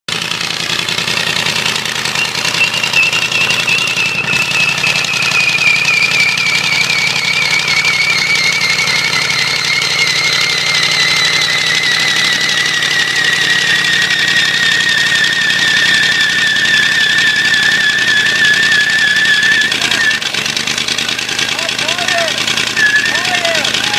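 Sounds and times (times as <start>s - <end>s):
engine running with knocking: 0.1s - 23.9s
high wavering squeal: 1.3s - 20.2s.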